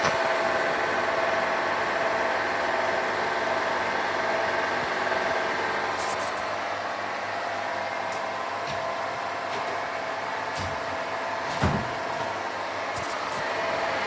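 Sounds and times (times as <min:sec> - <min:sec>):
washing machine grinding: 0:07.5 - 0:14.0.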